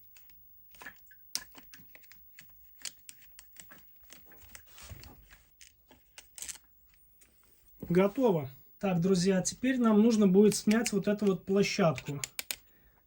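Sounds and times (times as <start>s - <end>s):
handling of parts: 0.0s - 7.9s, 10.5s - 12.8s
screwdriver clicks and scrapes: 5.6s - 6.6s, 11.9s - 12.6s.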